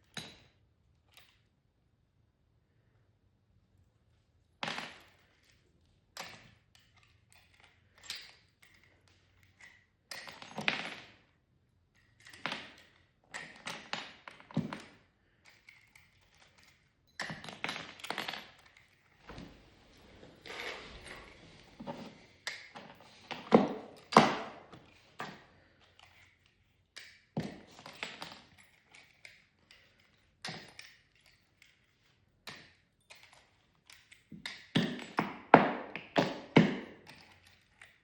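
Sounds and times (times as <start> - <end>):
brief scraping sounds: 19.4 - 22.4.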